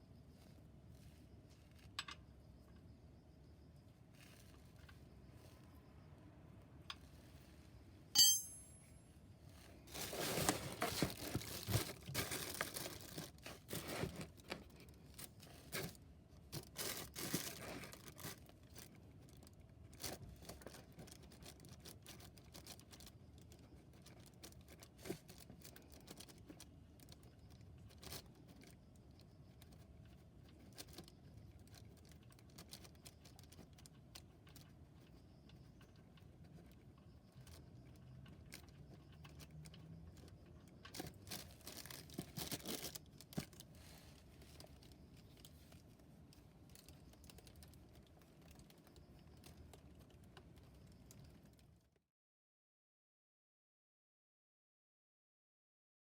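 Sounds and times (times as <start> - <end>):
bright clink: 8.2 - 9.0
crinkling and tearing: 9.9 - 28.8, 37.4 - 51.6.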